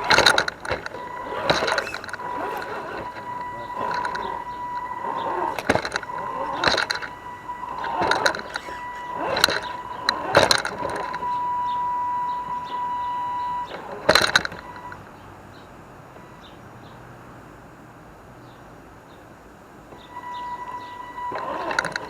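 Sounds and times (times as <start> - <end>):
toy truck clattering over rocks: 0.0 - 11.4
electric motor whining: 0.0 - 15.2, 19.9 - 22.0.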